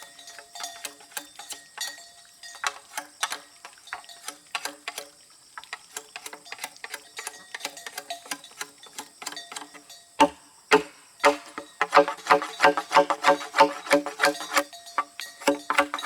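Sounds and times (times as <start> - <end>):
sharp clicks and taps: 10.2 - 16.0.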